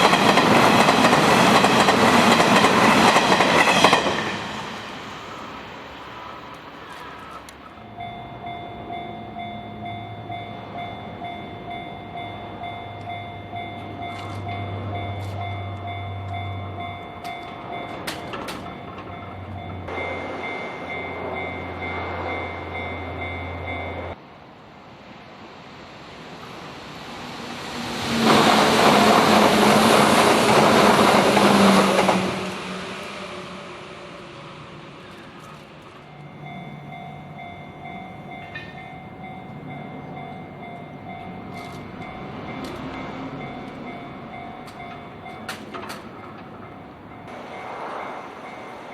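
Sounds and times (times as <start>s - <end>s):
electric train passing: 0.0s - 48.9s
level-crossing bell ringing: 7.7s - 24.2s, 35.9s - 48.9s.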